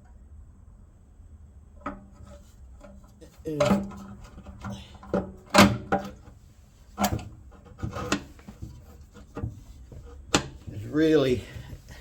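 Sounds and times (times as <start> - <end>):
fuel tank knocks and clunks: 3.6 - 6.4, 7.0 - 12.0.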